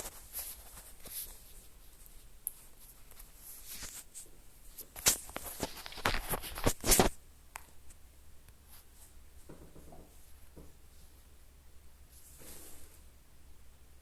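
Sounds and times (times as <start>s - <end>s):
rustling and scraping handling: 0.0s - 7.2s, 12.1s - 13.1s.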